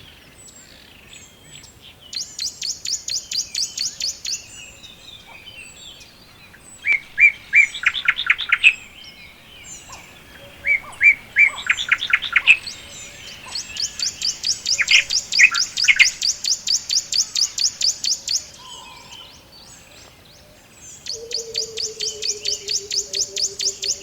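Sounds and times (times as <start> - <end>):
songbirds chirping: 0.0 - 24.0
rapid high bird trill: 4.6 - 18.6.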